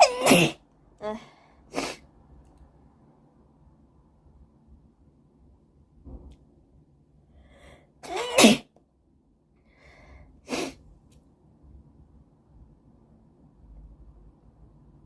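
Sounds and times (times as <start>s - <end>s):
person sneezing: 0.0s - 0.6s, 8.0s - 8.7s, 10.5s - 10.8s.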